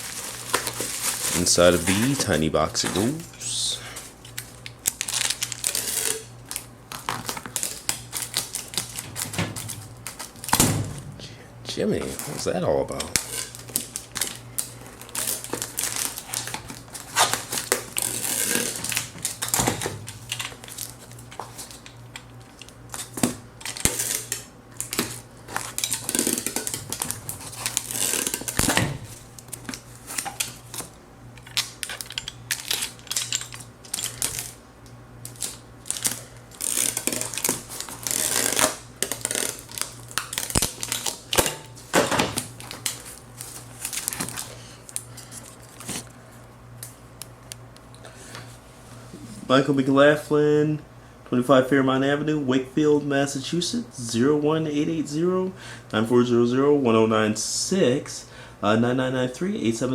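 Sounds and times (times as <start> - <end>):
packaging rustling and crinkling: 0.0 - 3.3, 4.0 - 11.2, 12.0 - 34.6, 35.3 - 46.9
faint low hum: 1.2 - 36.3.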